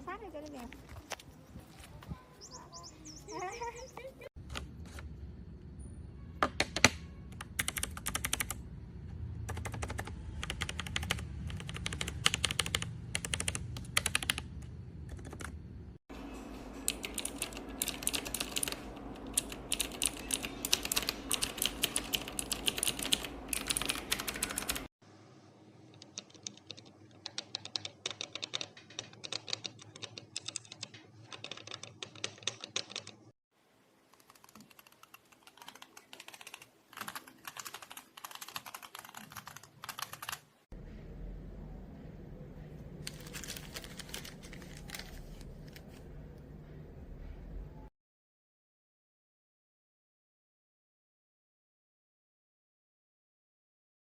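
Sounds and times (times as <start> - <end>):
mechanical keyboard typing: 7.3 - 8.6, 9.5 - 15.6, 16.9 - 24.9, 25.9 - 33.2, 34.1 - 40.4, 43.0 - 45.8.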